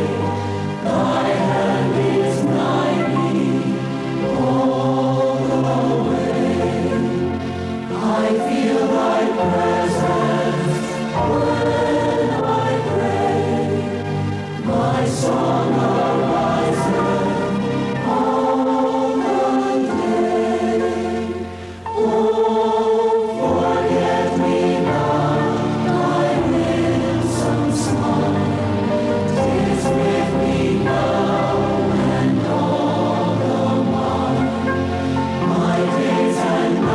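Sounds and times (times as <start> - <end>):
congregation singing a hymn: 0.0 - 36.9.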